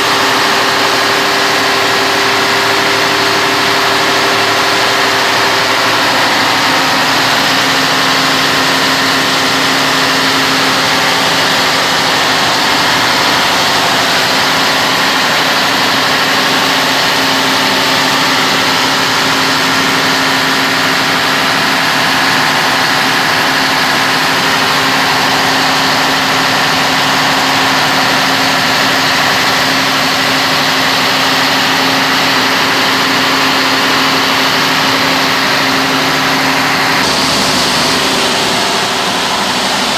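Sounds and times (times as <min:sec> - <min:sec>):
diesel generator humming: 0:00.0 - 0:39.9.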